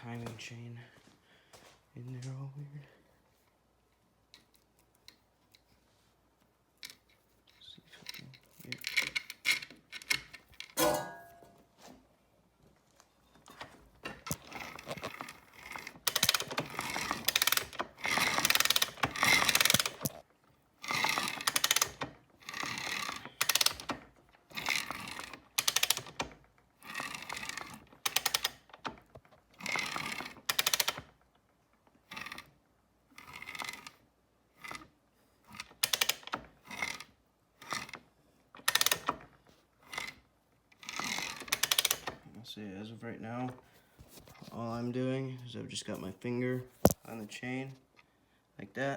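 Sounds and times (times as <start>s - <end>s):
metallic ratcheting and clattering: 14.0s - 20.2s, 20.9s - 28.8s.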